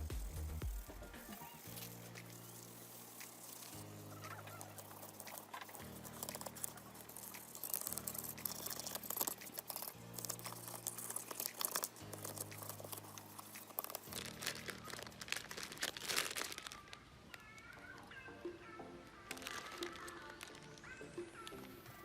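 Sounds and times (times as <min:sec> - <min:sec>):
quiet background music: 0:00.0 - 0:22.0
scratching and crackling: 0:00.0 - 0:22.0.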